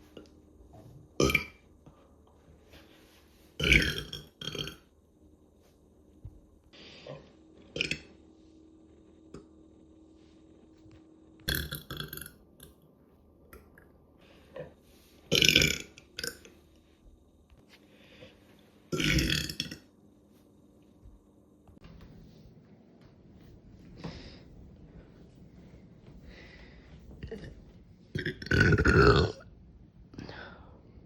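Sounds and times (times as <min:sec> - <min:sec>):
person burping: 0:01.2 - 0:01.6, 0:03.6 - 0:04.8, 0:07.8 - 0:08.1, 0:11.5 - 0:12.4, 0:14.6 - 0:16.5, 0:18.9 - 0:19.9, 0:27.2 - 0:29.5.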